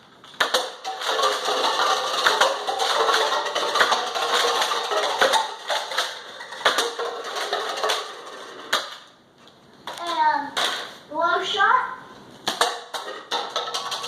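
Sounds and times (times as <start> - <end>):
plastic cups clattering: 0.2 - 9.2, 12.4 - 14.0.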